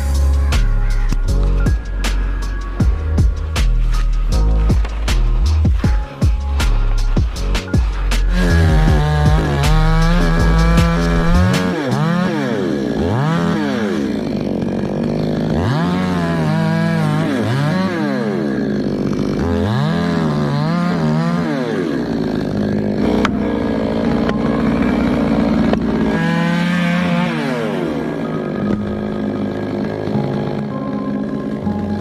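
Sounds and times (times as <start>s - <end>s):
chainsaw engine revving: 0.0s - 32.0s.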